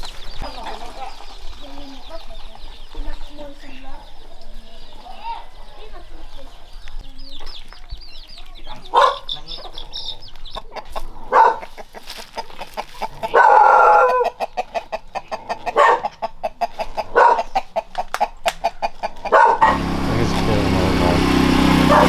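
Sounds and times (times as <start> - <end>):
chicks peeping: 0.0 - 17.8, 18.9 - 22.0
hens clucking: 8.7 - 22.0.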